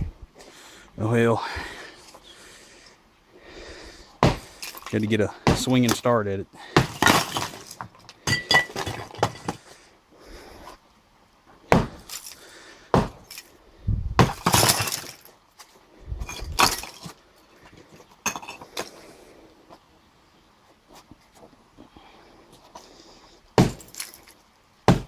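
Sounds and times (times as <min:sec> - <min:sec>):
sledgehammer striking block wall: 0:04.2 - 0:04.6, 0:05.4 - 0:06.0, 0:06.8 - 0:07.7, 0:11.7 - 0:12.1, 0:12.9 - 0:13.3, 0:14.2 - 0:15.1, 0:23.6 - 0:24.0
debris crumbling and clattering: 0:06.8 - 0:09.7, 0:14.2 - 0:15.4, 0:16.2 - 0:17.2.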